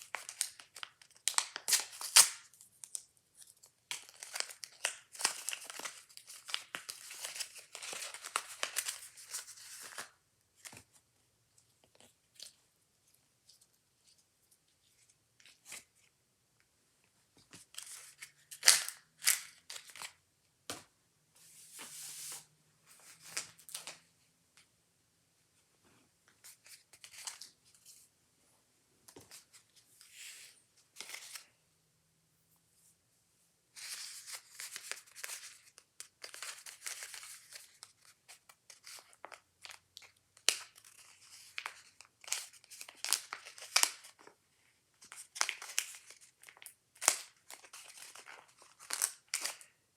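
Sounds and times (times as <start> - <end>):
packaging being torn and crinkled: 0.1 - 10.1, 17.7 - 20.2, 38.7 - 44.3, 45.1 - 49.7.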